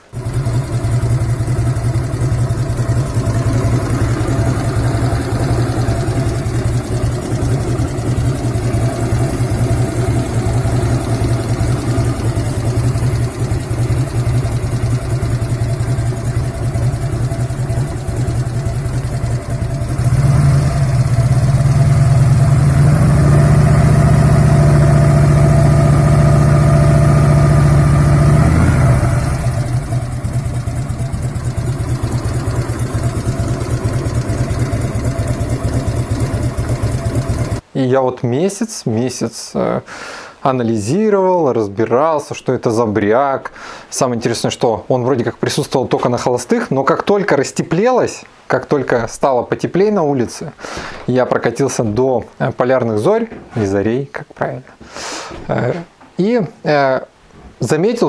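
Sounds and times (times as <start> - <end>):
metallic engine rattle: 0.0 - 37.6
motorcycle engine idling: 0.0 - 37.6.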